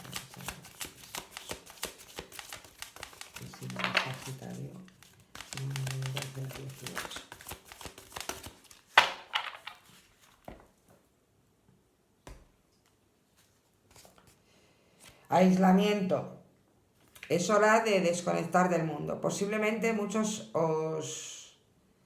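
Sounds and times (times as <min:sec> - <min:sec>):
cards being shuffled: 0:00.0 - 0:10.7, 0:12.2 - 0:14.4, 0:17.0 - 0:17.3
cards slapped on table: 0:08.1 - 0:10.6.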